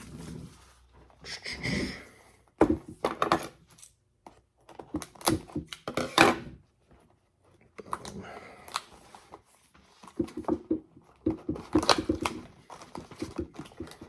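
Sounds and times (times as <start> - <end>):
cardboard rustling: 8.9 - 14.0.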